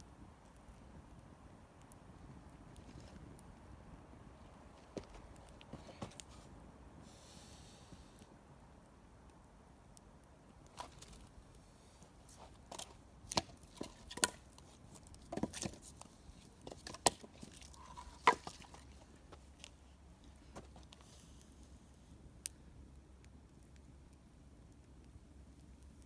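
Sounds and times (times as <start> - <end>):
campfire crackling and popping: 0.0 - 26.0.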